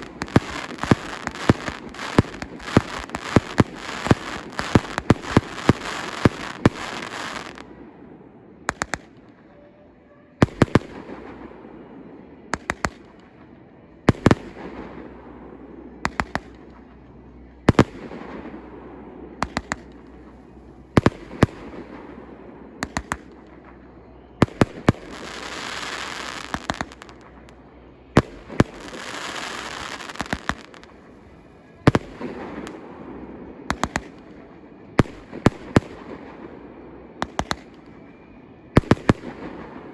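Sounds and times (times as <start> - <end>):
fireworks hissing: 0.0 - 7.6, 24.4 - 27.3, 28.2 - 31.1
firework shells bursting: 0.0 - 7.7, 8.7 - 9.3, 12.6 - 13.3, 16.0 - 17.0, 19.4 - 27.6, 28.2 - 31.1, 33.7 - 34.4.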